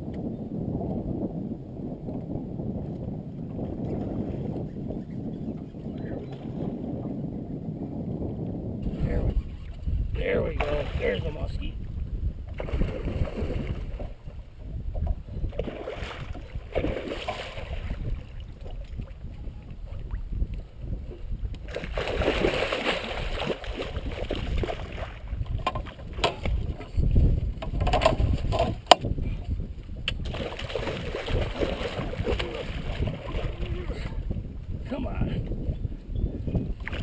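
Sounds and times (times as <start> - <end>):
wind on microphone: 0.0 - 37.0
water splashing and churning: 8.8 - 35.2, 36.8 - 37.0.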